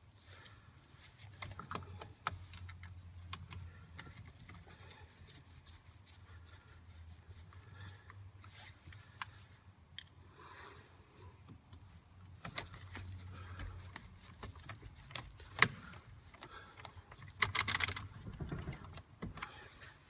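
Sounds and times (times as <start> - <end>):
hand tools clicking and rattling: 15.1 - 18.9.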